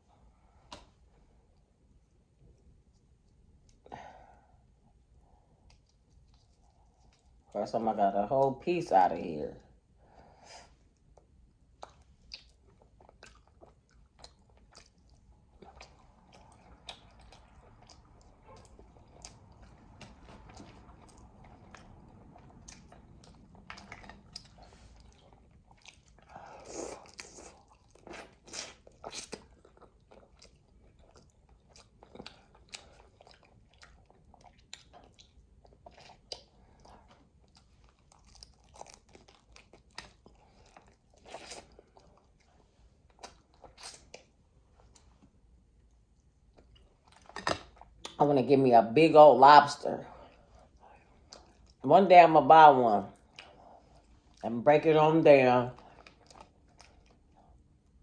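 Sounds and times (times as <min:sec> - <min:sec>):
chewing and biting: 0:11.0 - 0:48.2, 0:55.8 - 0:58.0.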